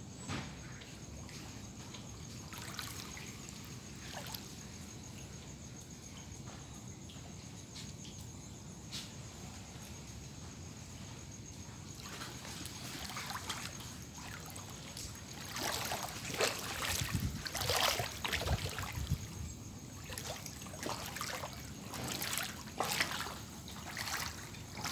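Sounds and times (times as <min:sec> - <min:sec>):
floodwater splashing: 0:02.3 - 0:04.6, 0:11.9 - 0:24.9.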